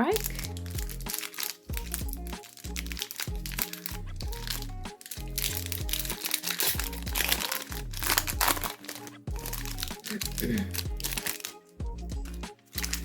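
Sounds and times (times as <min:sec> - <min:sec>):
background music with bass line: 0:00.0 - 0:13.0
foil wrapper crinkling: 0:00.0 - 0:13.0.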